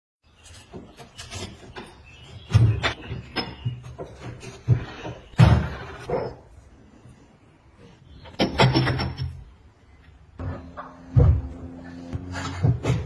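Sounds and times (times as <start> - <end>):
hard objects knocking and clattering: 8.3 - 9.5.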